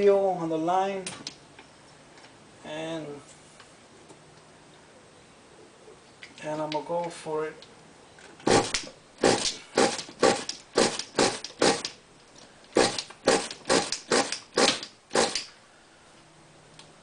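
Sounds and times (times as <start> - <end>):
pull-start cord engine whirring: 8.4 - 12.0, 12.8 - 15.5.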